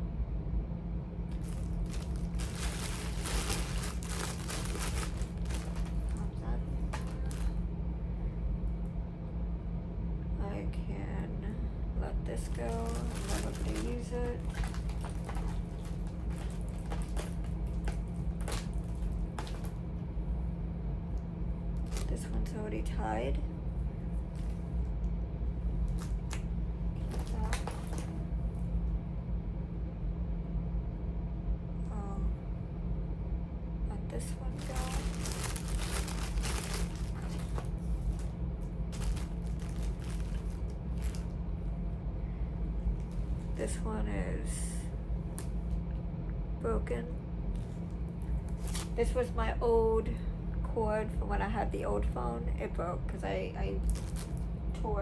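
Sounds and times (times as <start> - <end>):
steady low hum: 0.0 - 55.0
cables rustling and clicking: 1.3 - 7.7, 12.4 - 20.3, 21.0 - 22.4, 24.0 - 28.7, 34.2 - 41.6, 47.5 - 49.1, 53.8 - 54.6.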